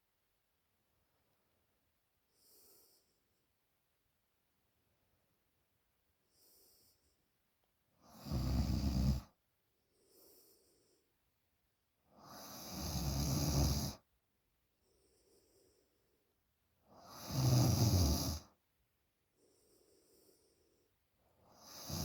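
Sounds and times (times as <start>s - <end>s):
soft breaths: 2.2s - 3.6s, 6.2s - 7.4s, 8.2s - 11.4s, 14.7s - 17.0s, 19.2s - 22.0s
woman snoring: 8.0s - 9.3s, 12.2s - 14.0s, 17.0s - 18.5s, 21.5s - 22.0s.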